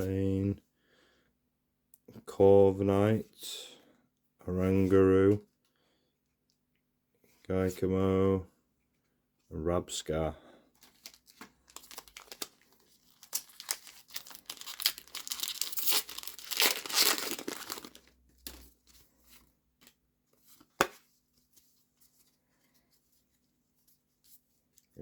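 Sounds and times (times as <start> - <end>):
foil wrapper tearing and crinkling: 10.8 - 18.6.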